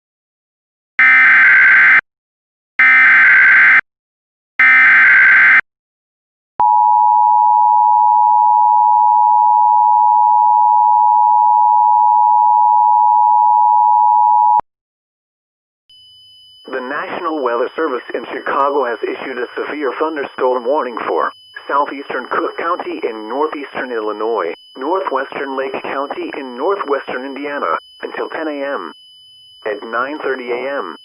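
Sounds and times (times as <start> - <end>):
digital data bursts: 16.0 - 31.0.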